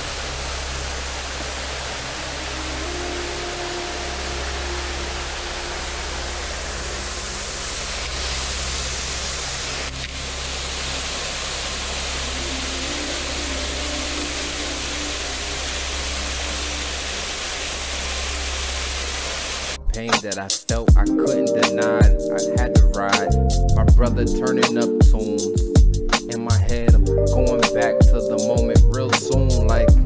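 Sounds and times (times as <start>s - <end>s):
steady rushing noise: 0.0s - 19.9s
low hum: 0.0s - 20.1s.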